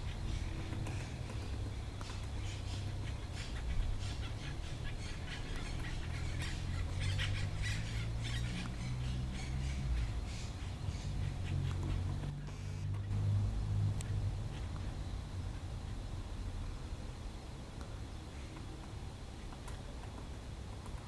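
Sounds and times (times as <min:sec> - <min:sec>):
woodpecker tapping: 0:00.0 - 0:12.9.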